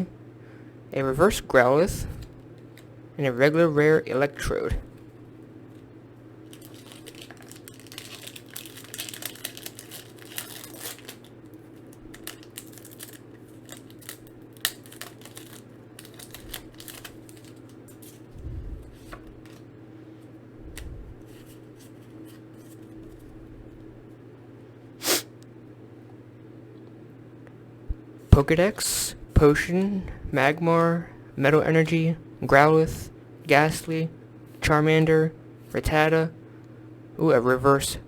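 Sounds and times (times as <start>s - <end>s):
foil pack tearing and crinkling: 6.4s - 18.2s
cards being handled: 6.5s - 18.3s, 18.9s - 19.7s, 20.8s - 23.3s
low hum: 15.3s - 24.8s.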